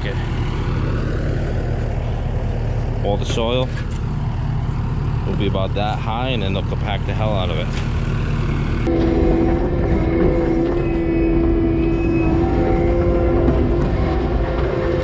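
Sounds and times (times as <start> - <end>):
diesel engine rumbling: 0.0 - 15.0
steady high whine: 8.3 - 15.0.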